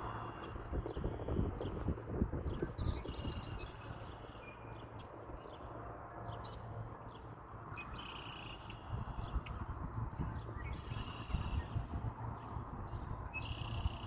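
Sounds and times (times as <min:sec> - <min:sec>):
steady low rumble: 0:00.0 - 0:14.0
birds chirping: 0:02.5 - 0:14.0.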